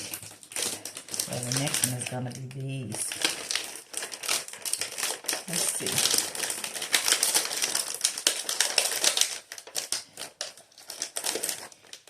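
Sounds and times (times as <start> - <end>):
pastry wrapper crinkling: 0.0 - 12.0.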